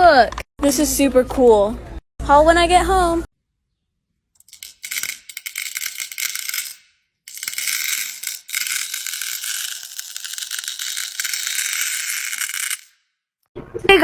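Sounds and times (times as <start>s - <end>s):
small hard pieces rattling: 4.4s - 13.0s.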